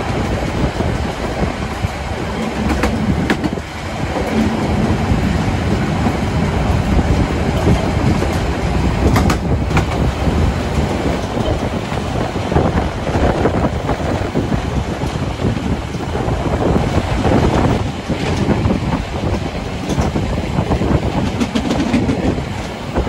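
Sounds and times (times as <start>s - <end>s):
train rumbling on rails: 0.0s - 23.0s
sharp clicks of rails: 0.1s - 5.0s, 5.7s - 10.1s.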